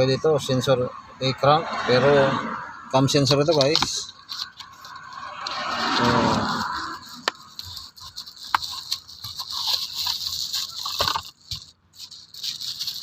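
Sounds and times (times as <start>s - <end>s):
small part clicking and rattling: 7.0s - 13.0s.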